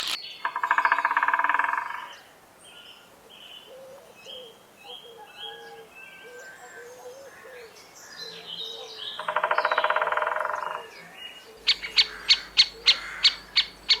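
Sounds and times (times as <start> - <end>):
loud rapid bird trill: 0.0 - 2.2, 9.2 - 10.8, 11.6 - 14.0
sharp evenly spaced bird calls: 0.0 - 14.0.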